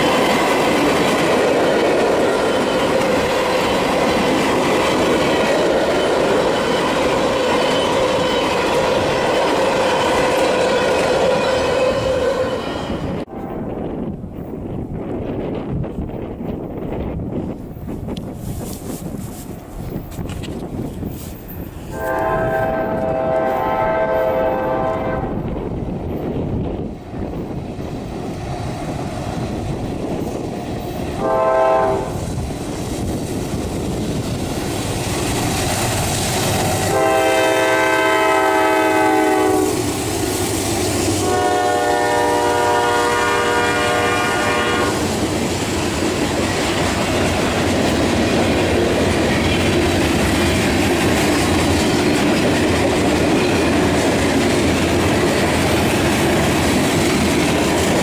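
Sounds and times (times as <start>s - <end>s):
wheels clacking on rail joints: 0.0s - 13.3s, 32.2s - 41.7s, 45.0s - 58.0s
train rumble: 0.0s - 58.0s
train air horn blasts: 9.9s - 13.6s, 21.9s - 25.4s, 31.2s - 32.2s, 36.8s - 40.0s, 41.2s - 45.2s.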